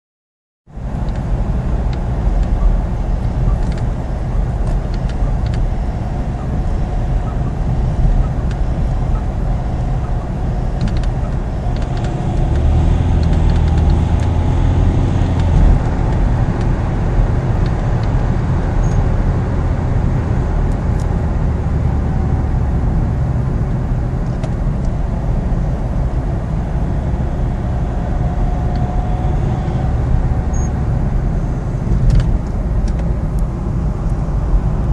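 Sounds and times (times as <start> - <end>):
car engine droning: 0.7 - 34.9
engine squeak: 3.4 - 14.1, 18.7 - 19.1, 26.7 - 31.0.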